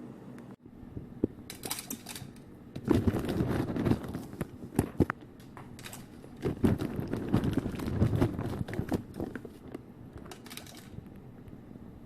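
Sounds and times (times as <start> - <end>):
dry pasta rattling: 1.5 - 11.1.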